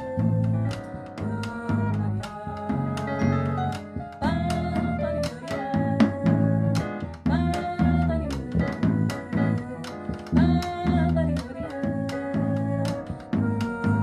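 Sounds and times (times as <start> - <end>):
piano: 0.0 - 14.0
walking bass line: 0.0 - 14.0.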